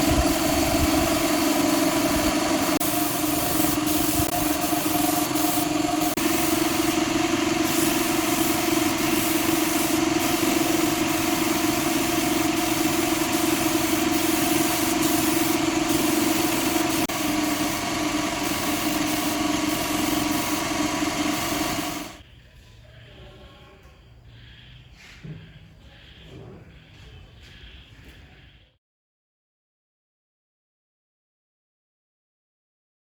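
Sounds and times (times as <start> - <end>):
workshop machine motor running: 0.0 - 22.2.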